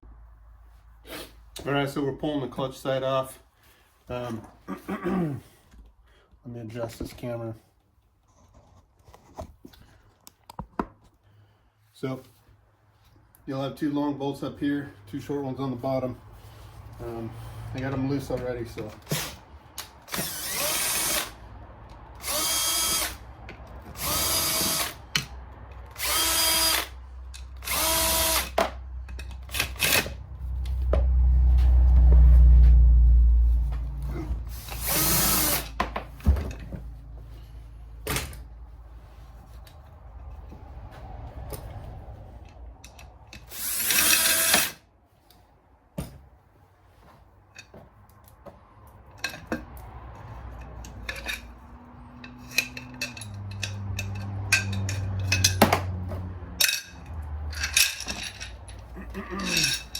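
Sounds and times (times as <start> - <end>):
power drill whining: 20.1 - 21.4, 22.2 - 23.2, 24.0 - 25.0, 26.0 - 27.0, 27.6 - 28.6, 34.6 - 35.7, 43.5 - 44.8.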